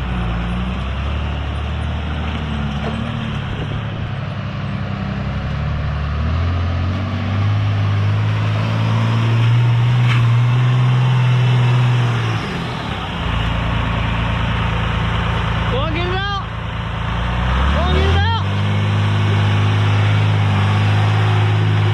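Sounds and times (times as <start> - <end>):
truck engine revving: 0.0 - 21.9.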